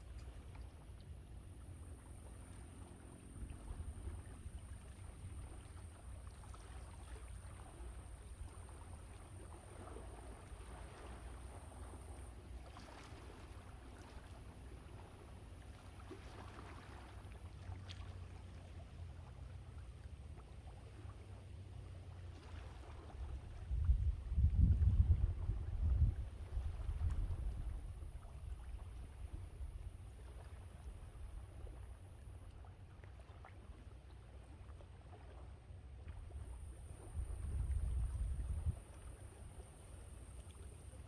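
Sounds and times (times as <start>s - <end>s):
wind rumble on microphone: 0.0s - 14.2s, 22.4s - 32.0s, 36.0s - 41.0s.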